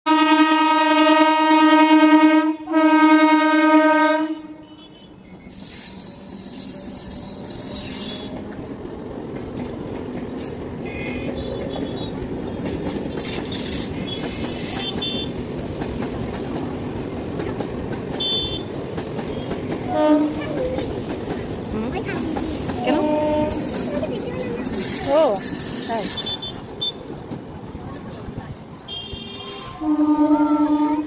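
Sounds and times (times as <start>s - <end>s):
train horn blasts: 0.0s - 5.3s, 18.2s - 18.7s, 19.9s - 20.7s, 22.8s - 23.9s, 28.9s - 31.0s
train rumbling on rails: 0.1s - 31.0s
wheels squealing on rail: 4.9s - 8.6s, 9.6s - 27.2s, 28.9s - 31.0s.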